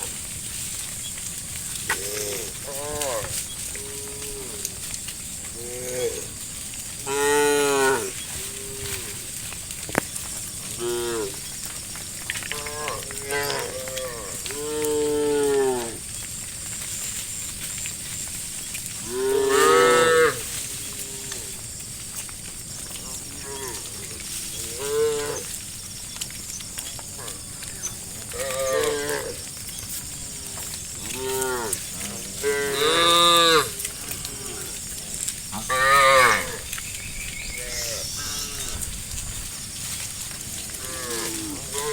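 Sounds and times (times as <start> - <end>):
cows mooing: 1.6 - 9.4, 10.6 - 11.6, 12.4 - 16.1, 19.0 - 21.7, 22.8 - 25.6, 26.9 - 29.5, 30.1 - 39.1, 40.4 - 41.9.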